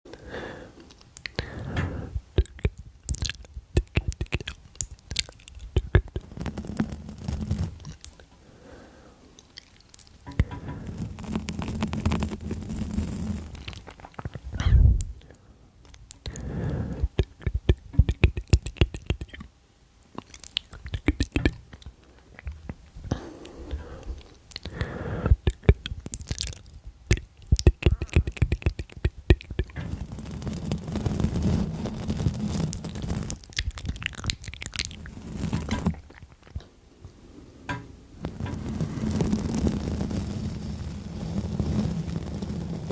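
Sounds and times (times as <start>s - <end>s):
mouth clicks and smacks: 0.8s - 8.3s, 9.4s - 19.5s, 20.1s - 31.3s, 32.0s - 36.7s
beard rustle: 3.1s - 8.2s, 9.7s - 14.5s, 25.5s - 36.6s, 38.2s - 42.9s
mouth puff: 23.0s - 26.0s, 27.1s - 29.8s.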